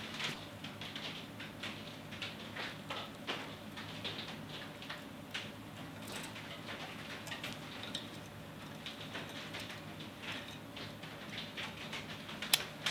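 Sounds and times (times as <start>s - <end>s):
metal tools clicking and tapping: 5.9s - 10.9s.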